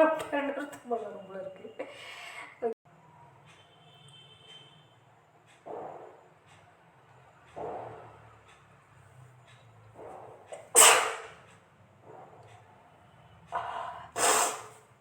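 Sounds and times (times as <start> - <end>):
woman sneezing: 10.6 - 11.4, 14.2 - 14.8
short inhale: 13.6 - 14.8.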